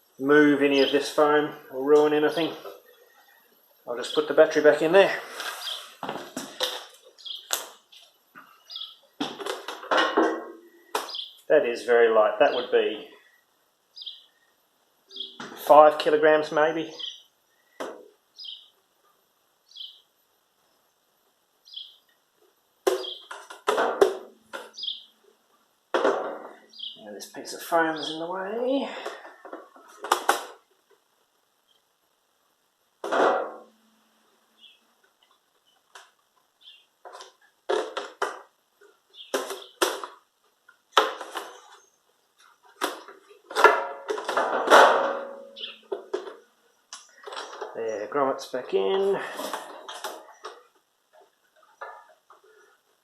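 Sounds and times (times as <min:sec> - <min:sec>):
bird chirping: 0:00.4 - 0:04.4, 0:05.3 - 0:06.0, 0:06.6 - 0:09.2, 0:10.6 - 0:11.8, 0:12.4 - 0:15.8, 0:16.8 - 0:18.9, 0:19.6 - 0:21.0, 0:21.6 - 0:22.2, 0:22.8 - 0:23.5, 0:24.4 - 0:25.3, 0:26.5 - 0:29.2, 0:34.5 - 0:34.9, 0:36.5 - 0:37.0, 0:39.1 - 0:40.0, 0:45.2 - 0:48.2
knocks and clatter of parts: 0:09.2 - 0:11.2, 0:25.9 - 0:26.6, 0:42.4 - 0:47.8.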